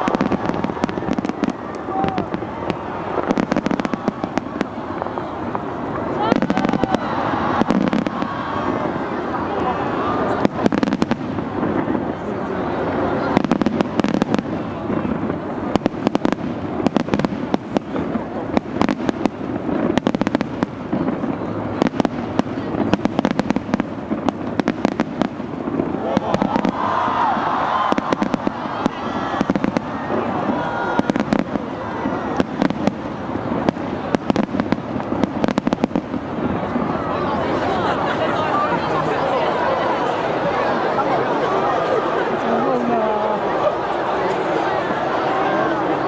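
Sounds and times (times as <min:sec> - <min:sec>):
fireworks cracking and popping: 0:00.0 - 0:37.9.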